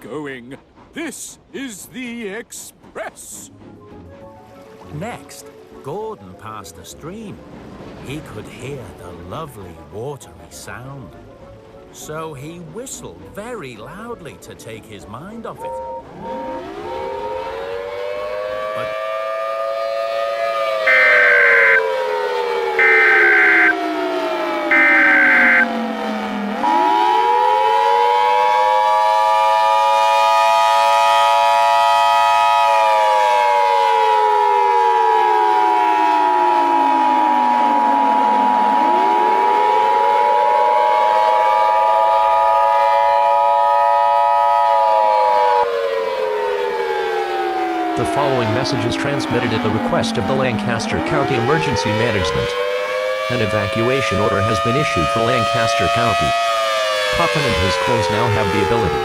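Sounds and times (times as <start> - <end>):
civil defense siren winding: 18.6 - 22.2, 22.8 - 23.8, 24.4 - 48.0, 52.6 - 53.3
buzzy data bursts: 20.9 - 21.8, 24.7 - 25.6
siren winding up and down: 20.9 - 21.8, 22.8 - 23.8, 24.7 - 25.7
two-tone alarm: 20.9 - 21.8, 22.8 - 23.8, 24.7 - 25.7.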